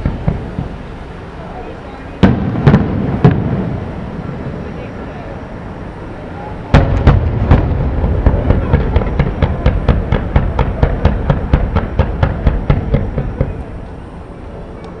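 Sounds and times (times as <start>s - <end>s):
fireworks bangs: 0.0s - 1.1s, 2.2s - 4.7s, 6.7s - 13.8s.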